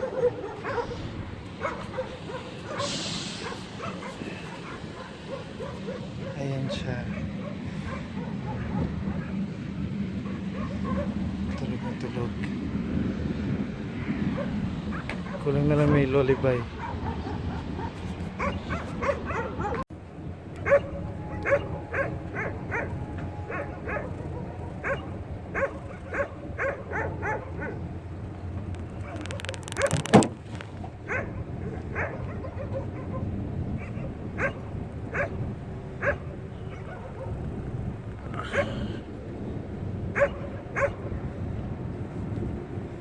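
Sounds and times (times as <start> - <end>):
dog yipping and barking: 0.0 - 1.0, 1.6 - 9.3, 10.2 - 11.2, 16.8 - 19.8, 20.6 - 27.8, 31.1 - 35.4, 36.0 - 37.4, 40.2 - 41.0.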